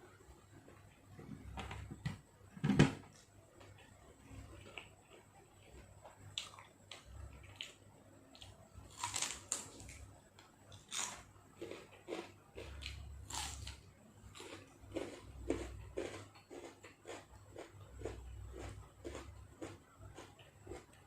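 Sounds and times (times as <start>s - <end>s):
person chewing food: 3.6s - 10.0s, 10.7s - 21.0s.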